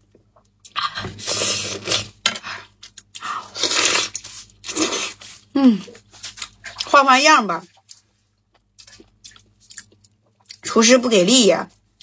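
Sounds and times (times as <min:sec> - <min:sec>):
person chewing meat: 0:00.0 - 0:00.8, 0:02.6 - 0:06.9, 0:07.7 - 0:10.7.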